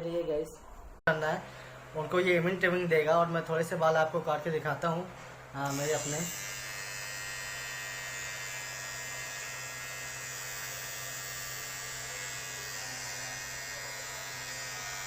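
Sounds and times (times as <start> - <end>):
beard trimmer buzzing: 5.6 - 15.0.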